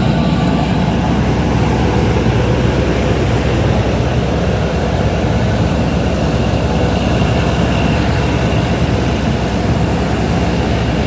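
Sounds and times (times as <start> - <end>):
boat diesel engines droning: 0.0 - 11.0.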